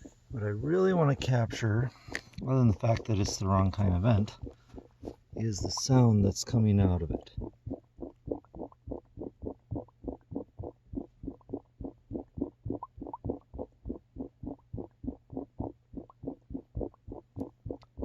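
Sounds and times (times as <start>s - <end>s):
muffled low dryer hum: 0.0s - 7.6s
dryer vent gurgling: 0.0s - 18.0s.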